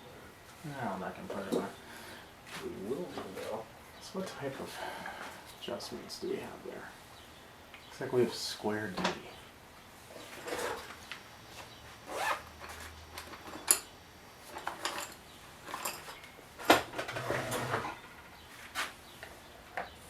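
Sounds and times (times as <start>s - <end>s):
tools and metal parts handled: 12.1s - 18.9s.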